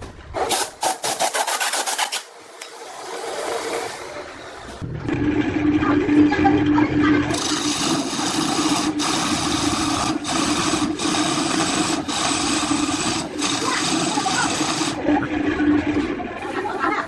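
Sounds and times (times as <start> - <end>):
lathe motor hum: 2.4 - 17.0
tool hissing on spinning wood: 7.3 - 15.0.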